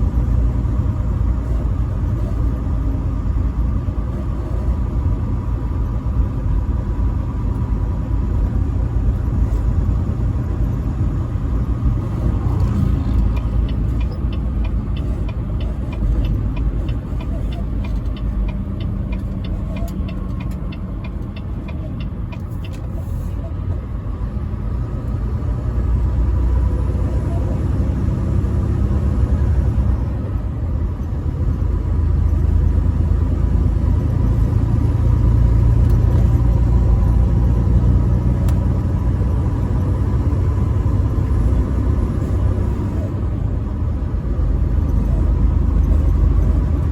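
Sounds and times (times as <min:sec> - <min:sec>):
truck engine and road rumble: 0:00.0 - 0:46.9
regular ticking: 0:13.2 - 0:22.8.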